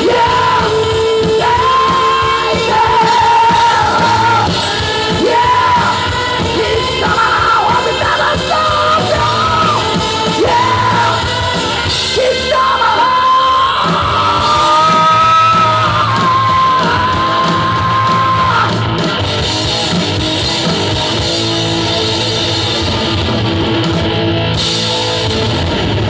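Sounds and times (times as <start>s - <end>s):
person singing at a shout: 0.0s - 19.0s
rock band playing loudly: 0.0s - 26.0s.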